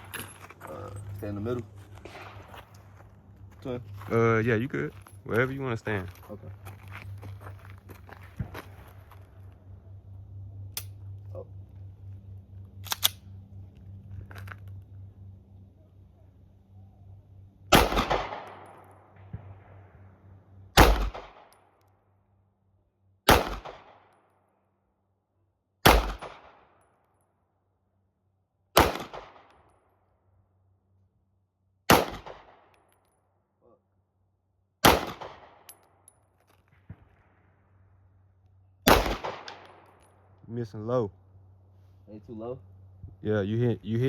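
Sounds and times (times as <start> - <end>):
pistol shots with echo: 17.7 - 19.8, 20.8 - 21.6, 23.3 - 24.2, 25.8 - 26.7, 28.8 - 29.5, 31.9 - 32.7, 34.8 - 35.8, 38.8 - 39.9.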